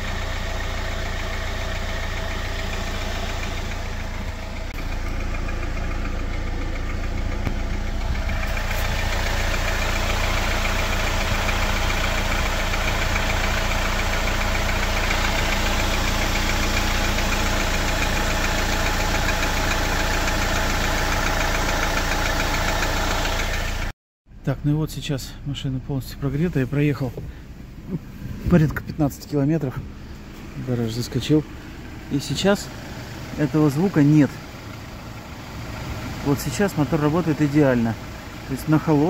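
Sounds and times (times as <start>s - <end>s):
car engine idling: 0.0s - 39.0s
light tapping engine knock: 0.1s - 23.9s.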